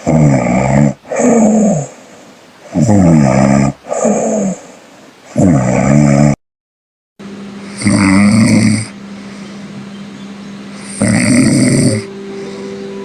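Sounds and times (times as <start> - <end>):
woman snoring: 0.0 - 2.0, 2.7 - 4.8, 5.4 - 6.4, 7.7 - 9.0, 10.8 - 13.0
steady low hum: 7.2 - 13.0.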